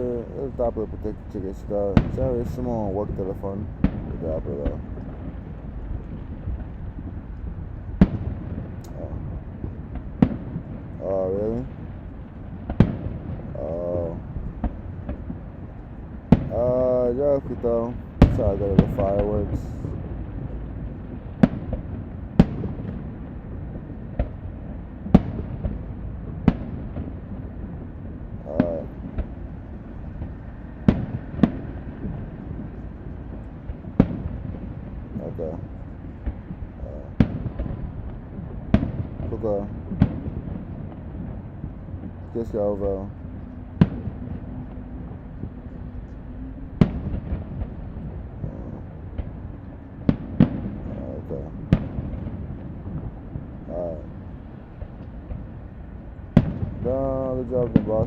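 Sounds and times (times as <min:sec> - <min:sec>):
low rumble: 0:00.0 - 0:58.0
small firework pops: 0:12.6 - 0:13.4, 0:21.1 - 0:23.4, 0:24.1 - 0:24.4, 0:25.1 - 0:27.2, 0:30.2 - 0:41.4, 0:43.8 - 0:44.5, 0:49.1 - 0:53.2, 0:56.3 - 0:56.9.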